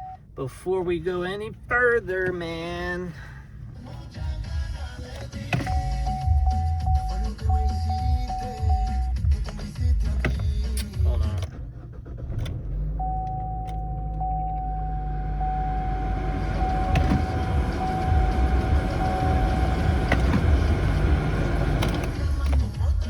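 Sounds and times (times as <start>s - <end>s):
dashboard warning chime: 0.0s - 0.6s, 5.6s - 9.2s, 13.0s - 22.4s
car engine idling: 0.0s - 23.0s.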